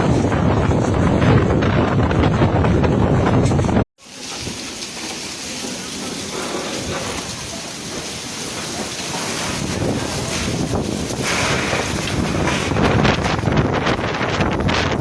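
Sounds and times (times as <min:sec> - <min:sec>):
heavy rain in wind: 0:00.0 - 0:15.0.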